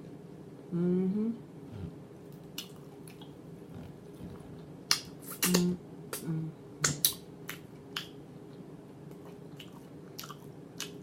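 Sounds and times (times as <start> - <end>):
low hums: 0.6 - 7.0
chewing: 1.7 - 5.6, 8.0 - 11.0
wet lip smacks and mouth clicks: 2.3 - 3.4, 4.9 - 6.2, 6.8 - 8.2, 9.1 - 11.0.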